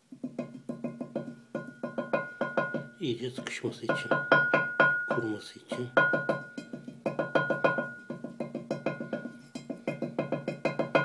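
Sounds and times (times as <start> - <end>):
high held tone: 4.1 - 6.4.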